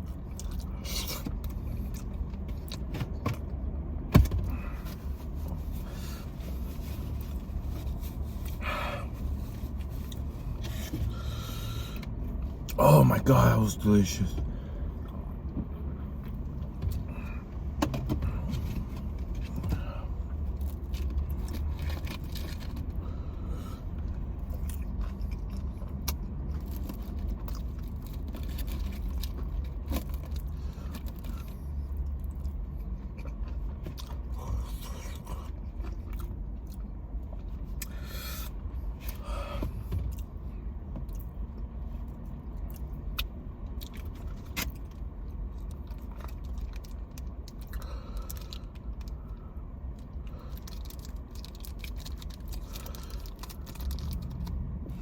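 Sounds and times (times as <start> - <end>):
steady low rumble: 0.0 - 55.0
person crunching food: 50.4 - 54.6.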